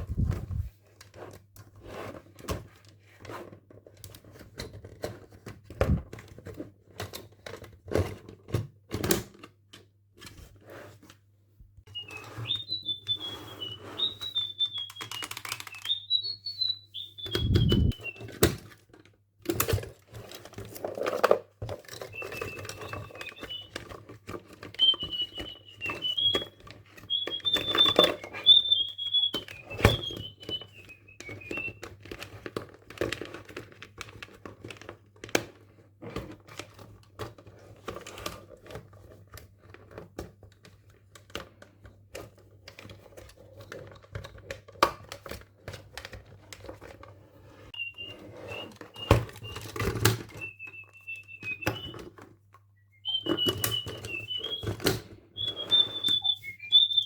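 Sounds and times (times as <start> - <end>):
high wavering chirps: 12.0 - 18.1, 53.0 - 54.7
sharp clicks: 14.7 - 16.3.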